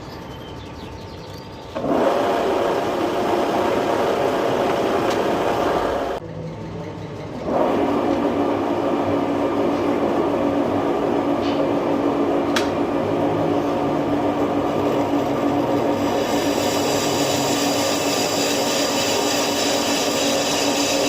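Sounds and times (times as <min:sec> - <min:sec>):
metal lathe humming: 0:06.8 - 0:21.0
lathe cutting rushing noise: 0:07.4 - 0:21.0.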